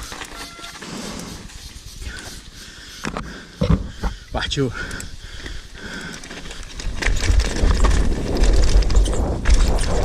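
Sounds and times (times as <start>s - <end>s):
bike tyres and frame clattering: 0.0s - 4.2s, 4.8s - 10.0s
wind buffeting microphone: 6.5s - 10.0s.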